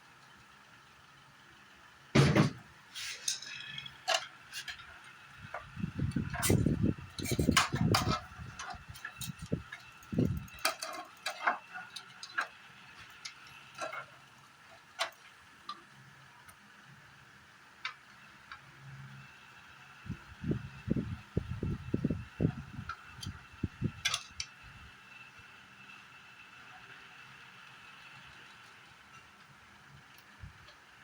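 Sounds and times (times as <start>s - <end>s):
metal and plastic parts clinking: 6.2s - 12.5s.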